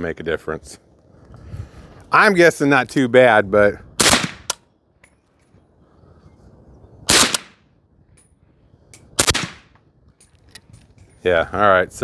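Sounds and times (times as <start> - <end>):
suppressed rifle shots: 4.0 - 4.6, 7.1 - 7.6, 9.2 - 9.7.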